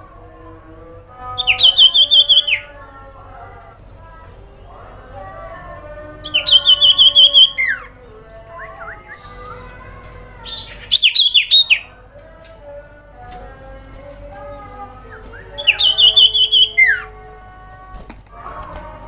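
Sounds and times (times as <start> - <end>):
faint background chirping: 0.0 - 18.0
bird singing ringing chips: 6.3 - 8.0, 10.4 - 11.9, 14.0 - 17.1.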